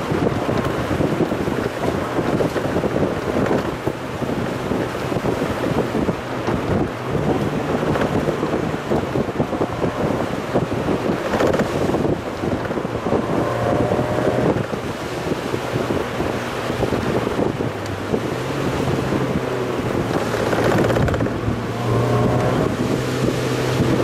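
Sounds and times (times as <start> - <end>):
low engine drone: 0.0 - 24.0
wind buffeting microphone: 0.0 - 24.0.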